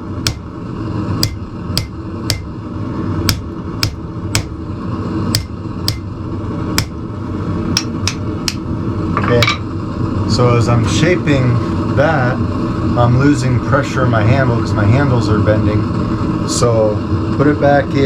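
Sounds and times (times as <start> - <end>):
steady low rumble: 0.0 - 18.0
hammer striking steel on anvil: 0.2 - 0.5, 1.2 - 2.6, 3.3 - 4.6, 5.3 - 6.1, 6.8 - 7.0, 7.8 - 8.6.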